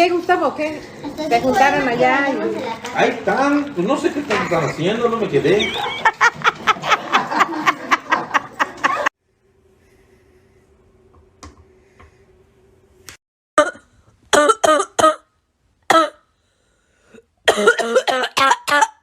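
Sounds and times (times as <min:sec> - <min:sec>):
faint steady hum: 0:09.2 - 0:18.5.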